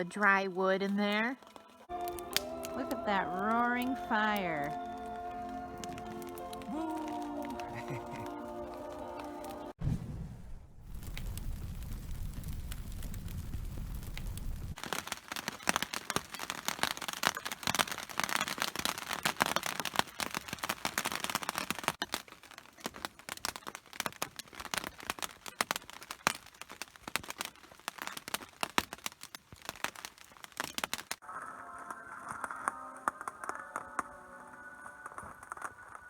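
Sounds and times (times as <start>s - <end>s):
campfire crackling: 0.0s - 36.0s
low rumble: 9.8s - 14.8s.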